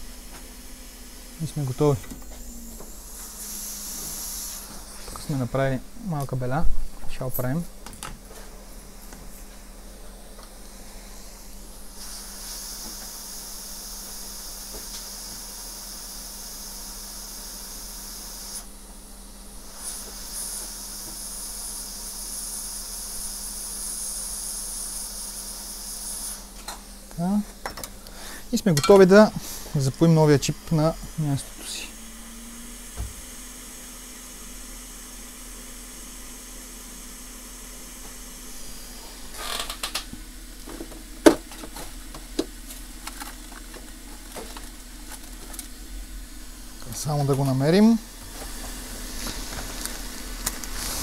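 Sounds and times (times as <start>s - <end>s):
hot air blower hissing: 0.0s - 51.0s
tools clicking and tapping: 28.8s - 29.0s.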